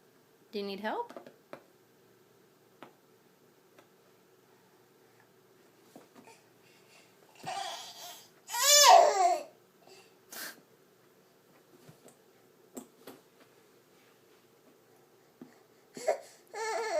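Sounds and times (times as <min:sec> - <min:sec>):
baby yelling: 0:07.4 - 0:09.6, 0:16.0 - 0:16.9.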